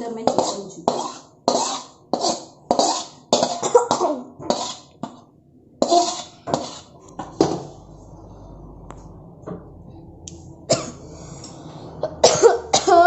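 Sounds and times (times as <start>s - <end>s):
woman coughing: 0.3s - 4.9s, 10.7s - 11.0s, 12.0s - 13.0s.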